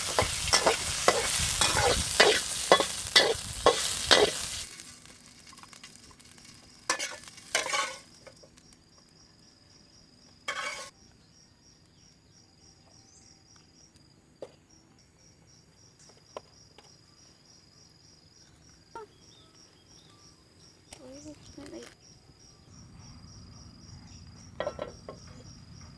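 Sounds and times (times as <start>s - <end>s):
utensil scraping in a pan: 0.0s - 8.4s, 10.5s - 10.9s
food sizzling: 0.0s - 8.8s, 10.4s - 10.9s
insect chirping: 0.0s - 25.9s.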